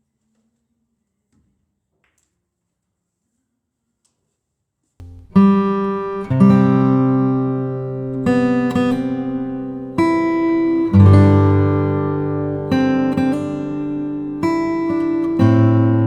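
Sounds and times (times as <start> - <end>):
acoustic guitar strumming chords: 5.0 - 16.0.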